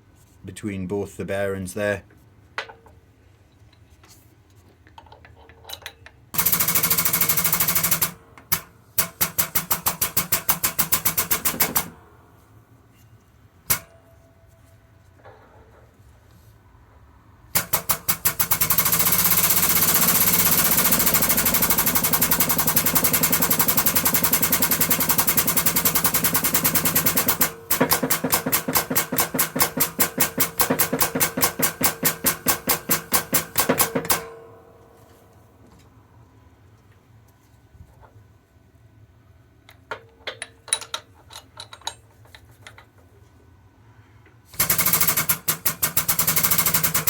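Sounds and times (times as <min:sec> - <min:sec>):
air press clattering strokes: 0:17.5 - 0:35.1.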